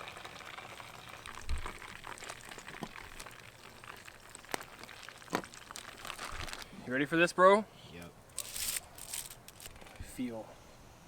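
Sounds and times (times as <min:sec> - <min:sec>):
hot oil bubbling and crackling: 0:00.0 - 0:06.7.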